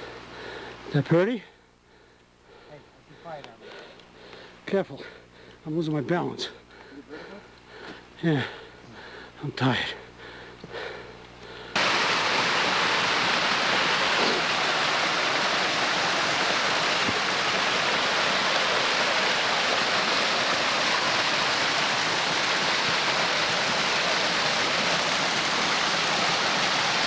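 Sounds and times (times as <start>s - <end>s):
mountain brook rushing: 11.8s - 27.0s.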